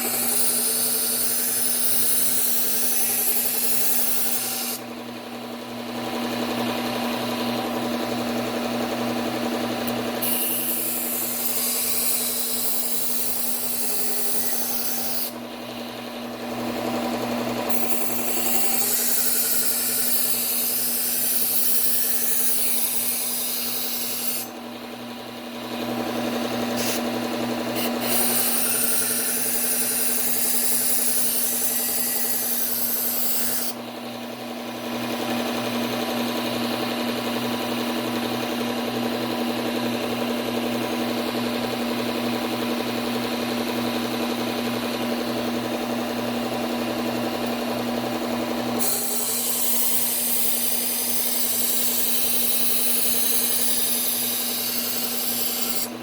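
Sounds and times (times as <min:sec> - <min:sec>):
knife grinding on sanding belt: 0:00.0 - 0:04.8, 0:10.2 - 0:15.3, 0:17.7 - 0:24.5, 0:26.8 - 0:27.0, 0:27.8 - 0:33.8, 0:48.8 - 0:56.0.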